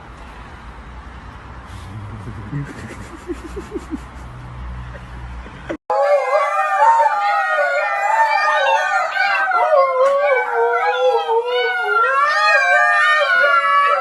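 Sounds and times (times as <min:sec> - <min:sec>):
animals howling: 0:05.9 - 0:14.0.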